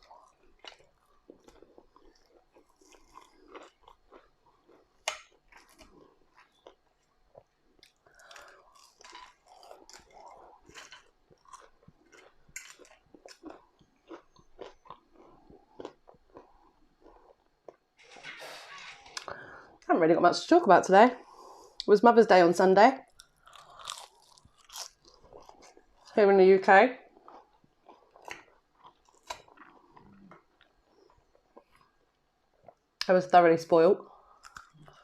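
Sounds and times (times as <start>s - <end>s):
person chewing: 0.0s - 18.1s, 23.1s - 26.2s, 27.0s - 33.0s, 34.2s - 35.0s
food crunching: 0.0s - 19.9s, 23.0s - 26.2s, 27.0s - 33.1s, 34.2s - 35.0s.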